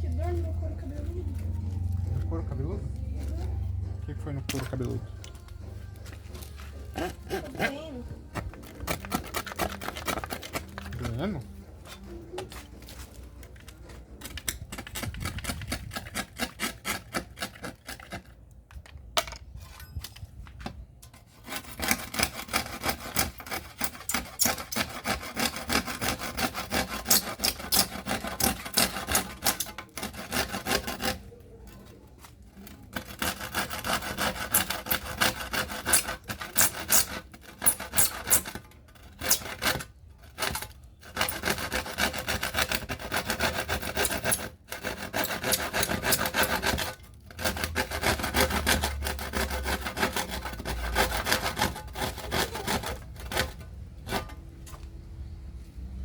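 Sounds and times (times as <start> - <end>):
rasping of sanding or filing: 5.9 - 8.0, 14.8 - 18.2, 21.2 - 31.9, 32.6 - 54.4.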